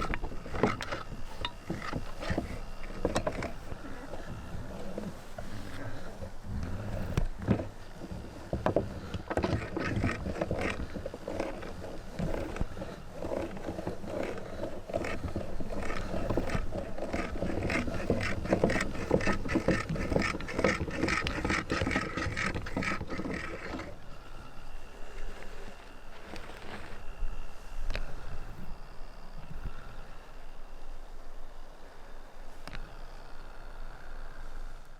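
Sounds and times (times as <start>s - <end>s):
soap crackling and scraping: 0.0s - 27.2s.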